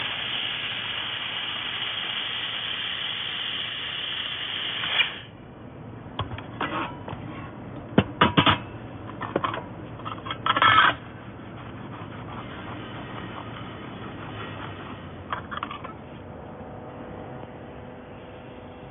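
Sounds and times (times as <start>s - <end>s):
welder hissing: 0.0s - 5.3s.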